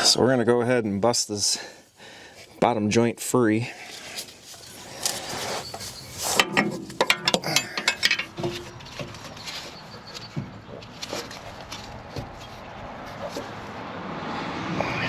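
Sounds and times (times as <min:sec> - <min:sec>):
wrench clicking and clanking: 0:06.2 - 0:08.7.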